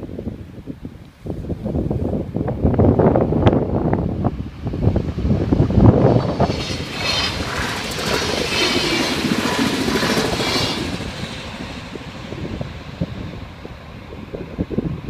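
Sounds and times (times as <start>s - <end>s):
wind buffeting microphone: 0.0s - 15.0s
train wheels rushing over rails: 3.8s - 15.0s.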